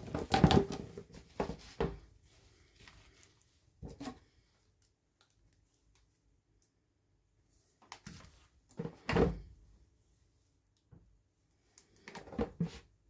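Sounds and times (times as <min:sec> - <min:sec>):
toy packaging rustling and knocking: 0:00.0 - 0:02.1.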